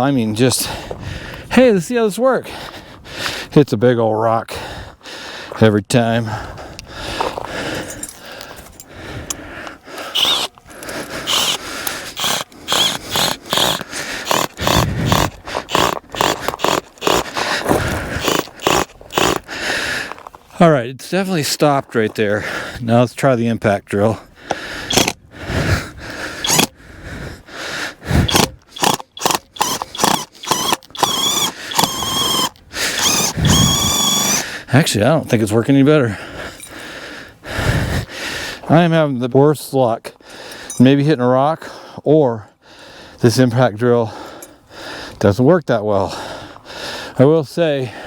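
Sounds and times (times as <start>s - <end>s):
cordless drill whining in bursts: 9.9s - 19.5s, 24.9s - 25.2s, 26.4s - 26.7s, 28.1s - 34.5s
screw grinding against rock: 10.0s - 20.3s, 24.9s - 25.2s, 26.4s - 26.7s, 28.2s - 34.4s.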